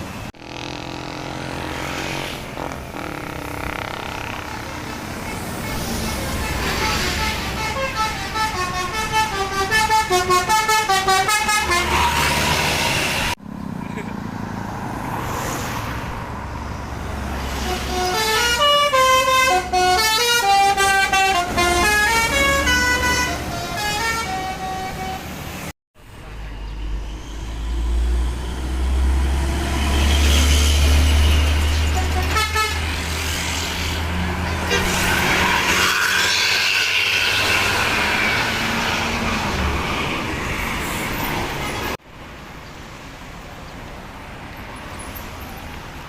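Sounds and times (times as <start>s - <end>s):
bus engine running: 0.0s - 14.1s
multi-tone musical bus horns: 0.4s - 13.4s, 17.4s - 25.6s, 30.0s - 33.2s, 34.4s - 39.3s.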